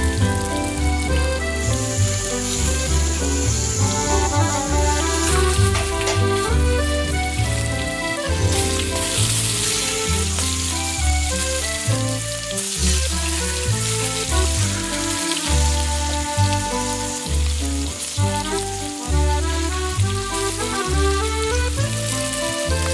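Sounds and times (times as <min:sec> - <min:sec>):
curry sizzling in a pan: 0:00.0 - 0:06.6, 0:07.3 - 0:22.9
music with pulsing bass: 0:00.0 - 0:22.9.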